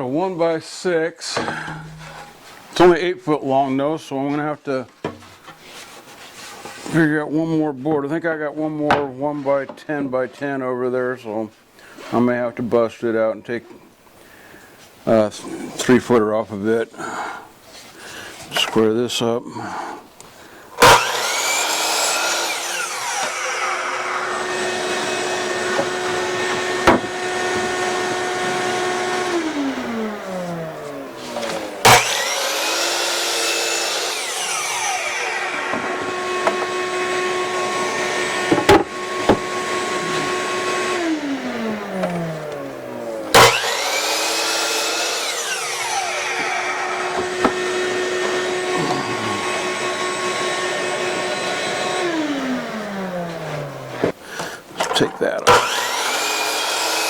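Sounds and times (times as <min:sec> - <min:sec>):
electric saw motor whining: 0:20.8 - 0:54.1, 0:55.5 - 0:57.0.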